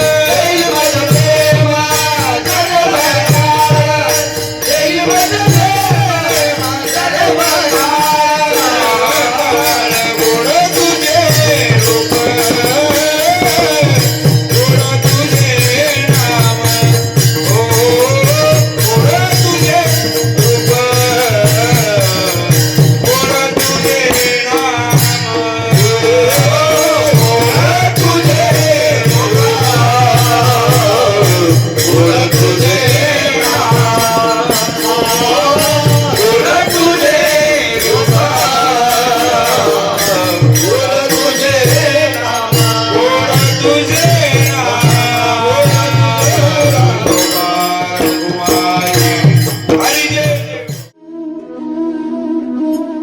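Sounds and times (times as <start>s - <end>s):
person singing melody: 20.6s - 53.0s.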